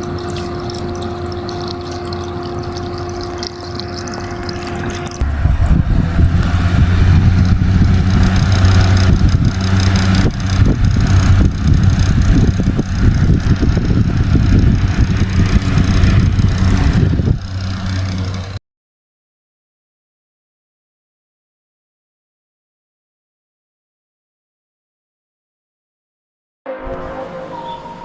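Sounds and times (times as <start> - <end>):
fan motor humming with air rush: 0.0 - 18.6.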